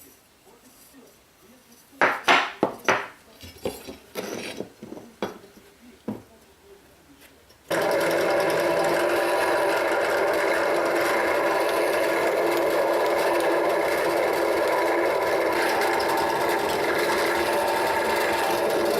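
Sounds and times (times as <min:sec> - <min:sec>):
electric power tool running: 0:07.7 - 0:18.9.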